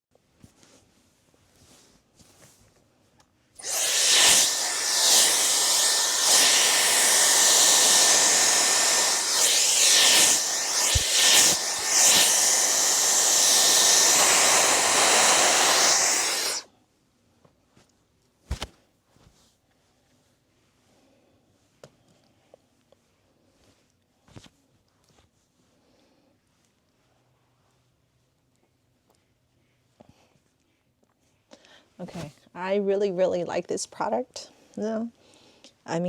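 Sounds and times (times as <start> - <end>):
hair dryer blowing: 3.6 - 16.7.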